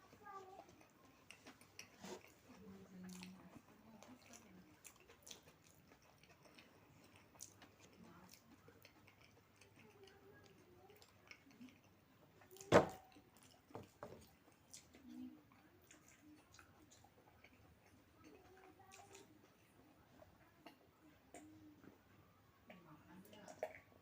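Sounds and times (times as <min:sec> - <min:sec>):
person chewing food: 0:00.0 - 0:24.0.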